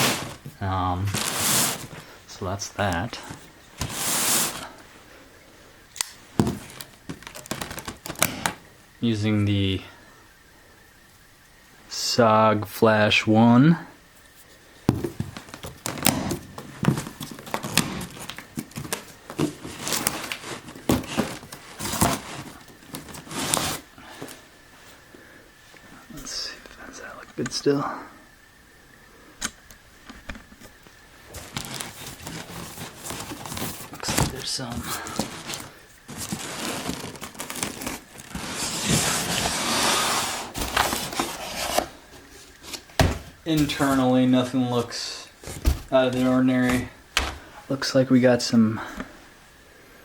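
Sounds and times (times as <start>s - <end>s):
knife cutting cardboard: 0.0s - 0.5s, 1.1s - 2.0s, 3.8s - 4.6s, 15.9s - 16.4s, 23.2s - 23.8s, 35.1s - 41.9s
packaging crinkling: 0.0s - 2.2s, 6.0s - 8.6s, 15.1s - 23.9s, 31.3s - 44.0s
cardboard knocks: 14.9s - 18.0s, 43.0s - 43.7s, 45.5s - 45.9s.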